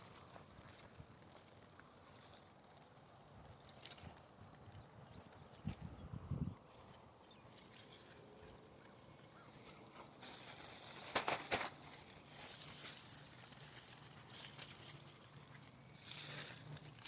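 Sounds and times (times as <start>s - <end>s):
bush leaves rustling: 6.7s - 17.0s
sharp crackles: 9.6s - 17.0s.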